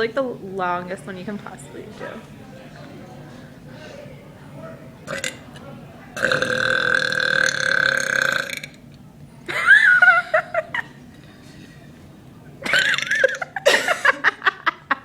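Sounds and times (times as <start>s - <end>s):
woman belching: 5.1s - 5.4s, 6.2s - 8.8s, 12.7s - 13.4s.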